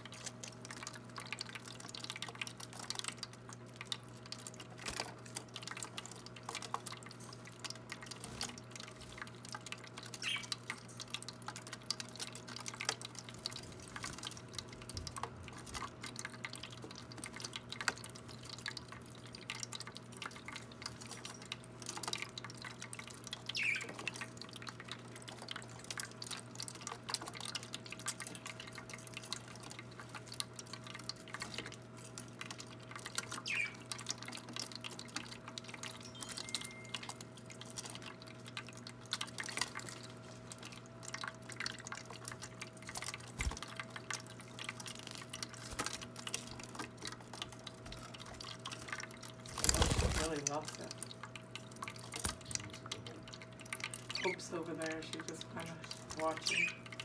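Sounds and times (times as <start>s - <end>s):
fountain splashing and dripping: 0.0s - 57.0s
parakeets chirping: 10.2s - 10.5s, 23.6s - 24.0s, 33.4s - 33.8s, 54.1s - 54.6s, 56.2s - 56.9s.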